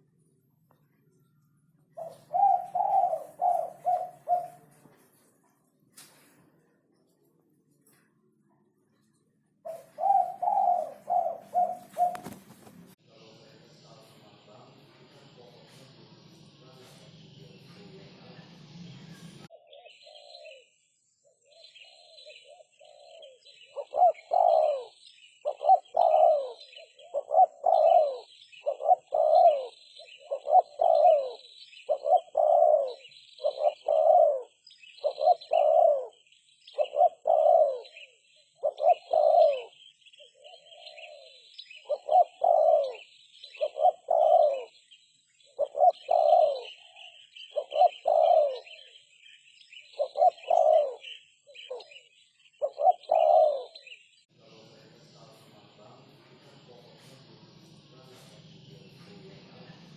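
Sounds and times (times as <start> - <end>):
small birds chirping: 0.0 - 59.9
dove cooing: 1.9 - 5.0, 9.6 - 12.7, 19.5 - 20.7, 21.4 - 54.0.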